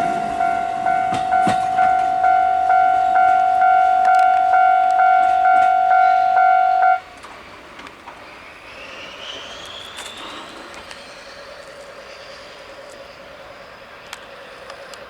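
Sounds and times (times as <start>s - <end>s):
level-crossing warning bell: 0.0s - 7.1s.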